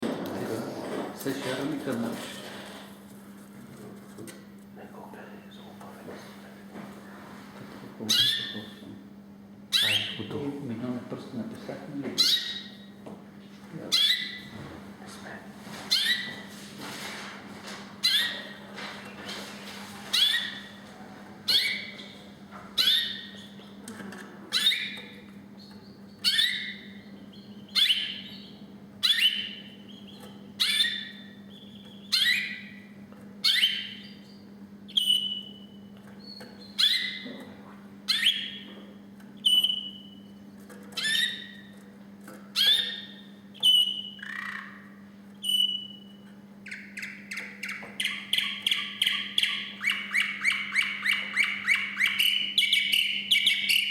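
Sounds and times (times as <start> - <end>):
canary singing: 8.0 - 8.9, 9.7 - 10.4, 12.2 - 13.0, 13.9 - 14.6, 15.9 - 16.5, 18.0 - 19.3, 20.0 - 23.9, 24.5 - 41.9, 42.5 - 53.9
fast bird trill: 42.6 - 44.8, 45.4 - 53.9.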